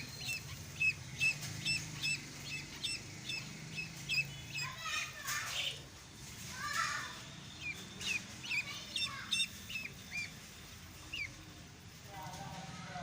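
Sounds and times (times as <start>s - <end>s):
duckling peeping: 0.0s - 5.2s, 7.6s - 11.5s.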